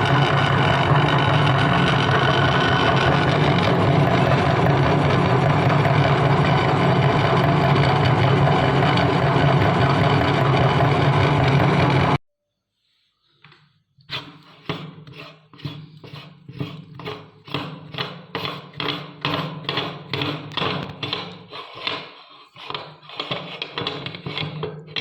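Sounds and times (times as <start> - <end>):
low motor hum: 0.0 - 12.2
meat grinder crunching biscuits: 0.0 - 12.2.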